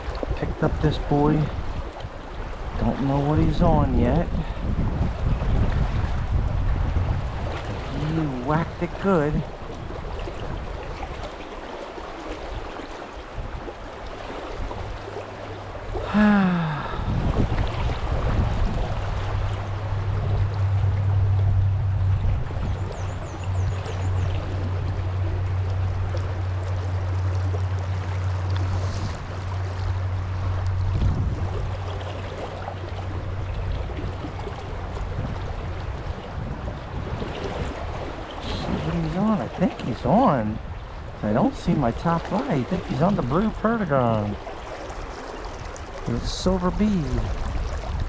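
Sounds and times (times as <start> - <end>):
river water rushing: 0.0 - 48.0
low rumble: 15.6 - 42.3
man's short wordless vocal sound: 16.0 - 17.1.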